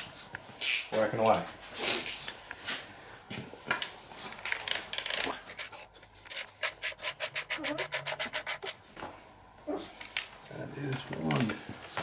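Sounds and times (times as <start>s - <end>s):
hand tool rasping: 5.1s - 8.8s.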